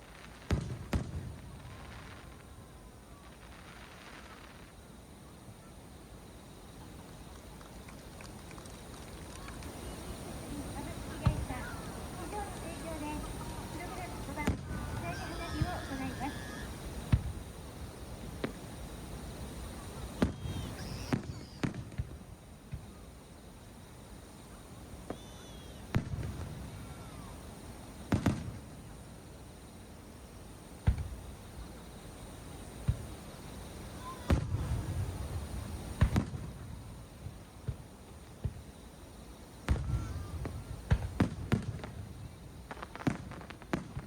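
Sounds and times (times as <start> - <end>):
fireworks booming: 0.0 - 4.8, 8.6 - 23.0, 25.0 - 28.9, 30.8 - 31.7, 32.8 - 38.8, 39.6 - 44.0.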